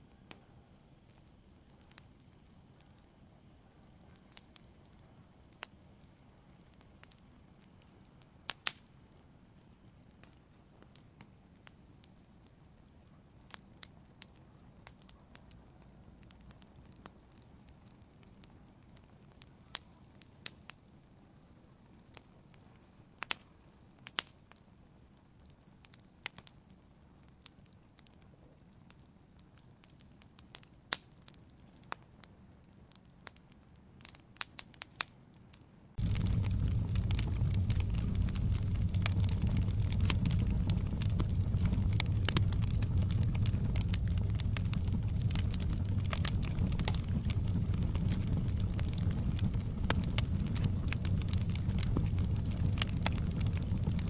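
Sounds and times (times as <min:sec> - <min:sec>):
faint low hiss: 0:00.0 - 0:24.0, 0:35.9 - 0:54.0
log fire crackling: 0:36.0 - 0:54.0.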